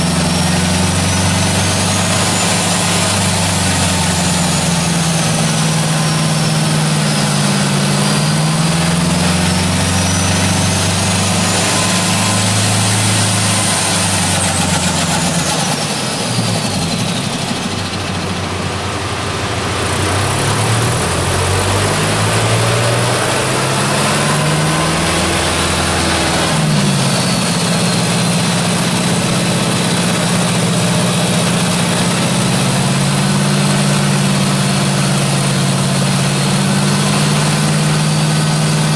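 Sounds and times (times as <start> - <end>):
four-cylinder engine running: 0.0 - 38.9.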